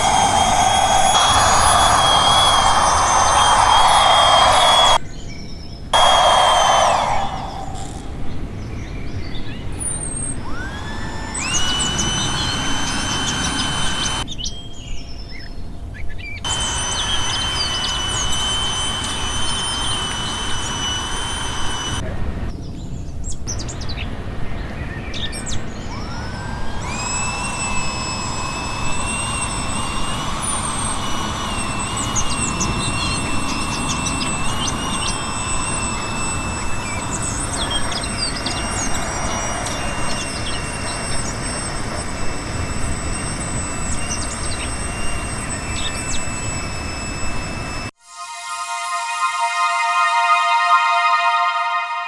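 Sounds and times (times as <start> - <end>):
electric air pump running: 0.0 - 5.0, 6.0 - 8.4, 9.8 - 14.3, 16.4 - 22.0, 25.3 - 48.0
birds chirping: 0.0 - 47.9.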